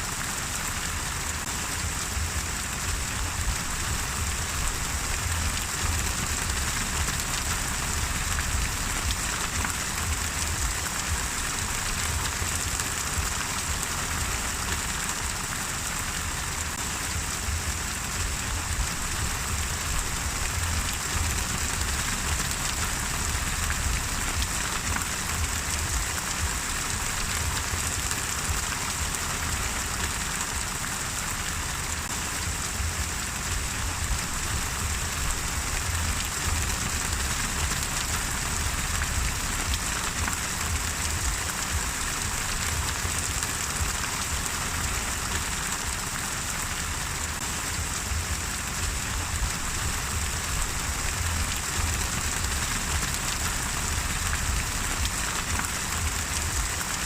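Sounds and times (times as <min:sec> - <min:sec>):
steady rain falling: 0:00.0 - 0:57.0
low rumble: 0:01.8 - 0:13.3, 0:17.2 - 0:29.0, 0:32.3 - 0:42.9, 0:47.8 - 0:56.9.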